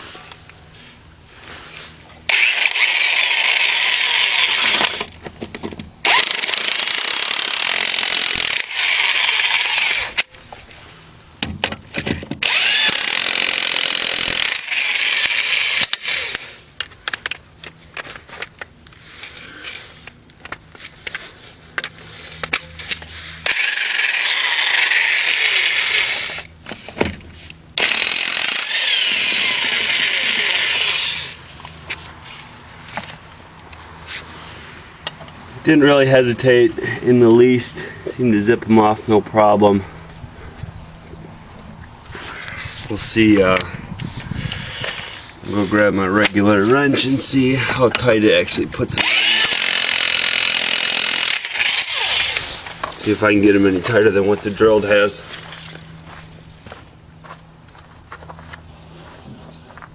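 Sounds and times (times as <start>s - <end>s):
electric impact wrench hammering: 2.3s - 5.2s, 6.0s - 10.3s, 11.4s - 16.6s, 23.4s - 26.6s, 27.8s - 31.4s, 48.9s - 53.0s.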